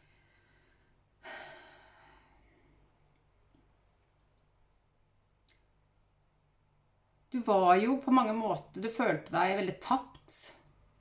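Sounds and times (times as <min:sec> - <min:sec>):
breath out like a sigh: 0:00.2 - 0:02.4.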